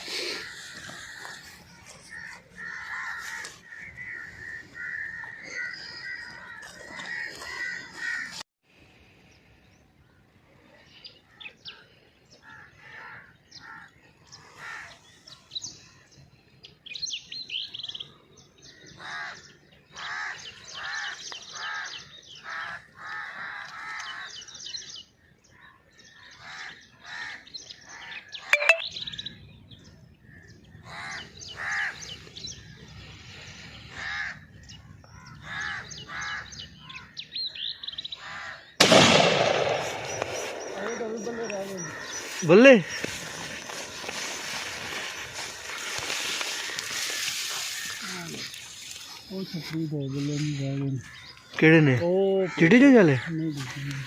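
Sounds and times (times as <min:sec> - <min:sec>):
crows cawing: 0:00.0 - 0:08.4, 0:12.4 - 0:15.0, 0:18.7 - 0:24.8, 0:25.5 - 0:28.8, 0:30.4 - 0:32.4, 0:33.2 - 0:49.2, 0:50.5 - 0:54.0
small birds chirping: 0:09.3 - 0:54.0
sharp bang: 0:38.8 - 0:41.1.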